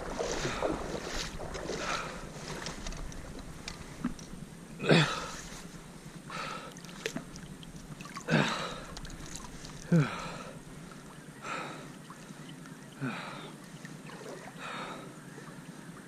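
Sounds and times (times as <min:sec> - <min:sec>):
water sloshing splashes: 0:00.0 - 0:04.4, 0:06.5 - 0:12.4, 0:13.1 - 0:15.0.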